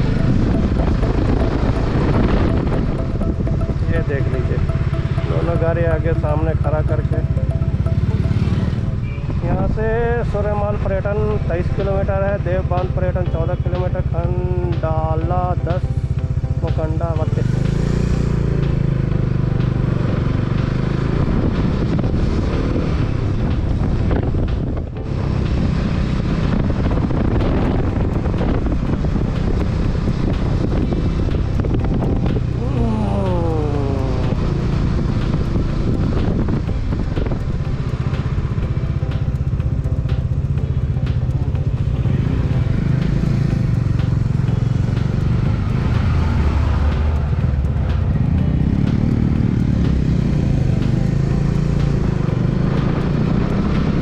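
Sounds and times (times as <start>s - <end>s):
wind noise: 0.0s - 5.1s, 19.3s - 54.0s
motorcycle engine running: 0.0s - 54.0s.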